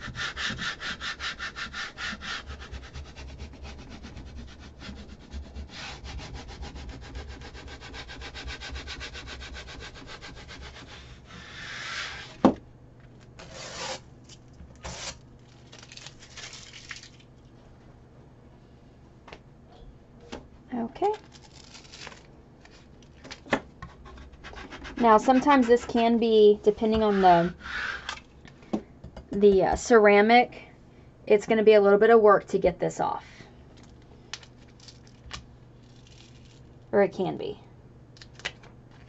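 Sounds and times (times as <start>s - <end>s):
vinyl rubbed onto tile: 13.4s - 14.0s, 27.0s - 28.2s.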